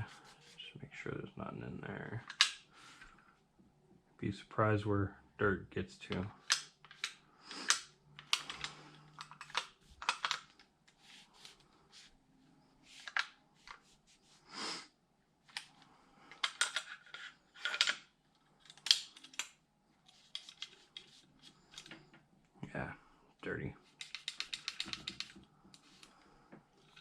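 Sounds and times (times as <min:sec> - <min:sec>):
scratchy scrubbing strokes: 0:00.0 - 0:00.7
small clicks of parts handled: 0:06.1 - 0:11.0, 0:15.5 - 0:21.1, 0:24.0 - 0:27.0.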